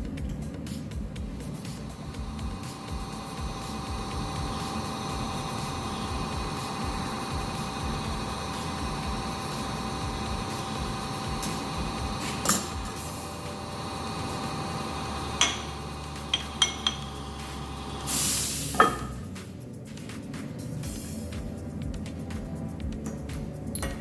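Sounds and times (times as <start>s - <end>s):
steady hum: 0.0s - 24.0s
short loud hiss: 18.0s - 19.0s.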